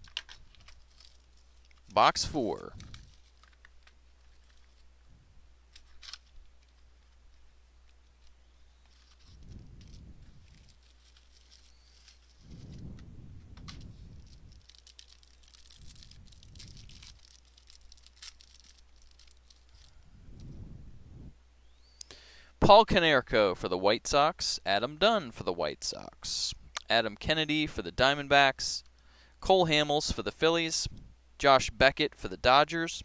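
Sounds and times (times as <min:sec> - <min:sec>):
packaging tearing and crinkling: 0:00.0 - 0:01.9, 0:02.8 - 0:04.9, 0:05.7 - 0:06.8, 0:08.9 - 0:12.8, 0:13.6 - 0:19.9.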